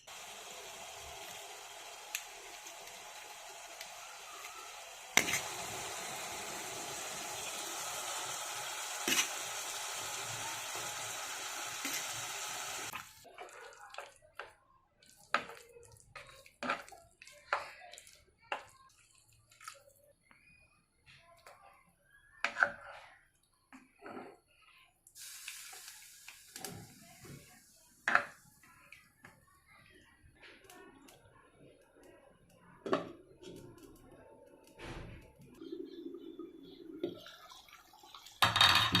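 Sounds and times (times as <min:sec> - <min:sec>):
water running from a tap: 0:00.1 - 0:14.1, 0:25.2 - 0:27.6, 0:37.0 - 0:39.0.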